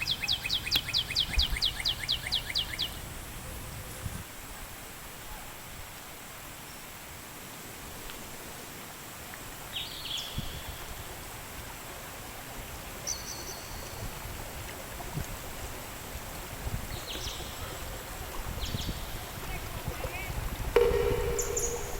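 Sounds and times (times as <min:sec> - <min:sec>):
birds chirping: 0:20.8 - 0:21.9.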